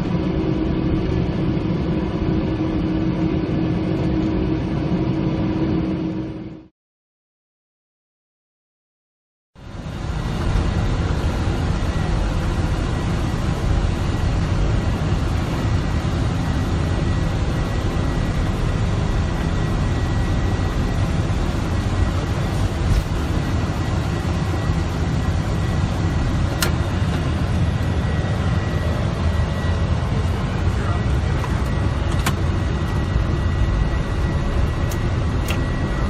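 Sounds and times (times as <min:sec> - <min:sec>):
high whine: 0:09.6 - 0:36.0.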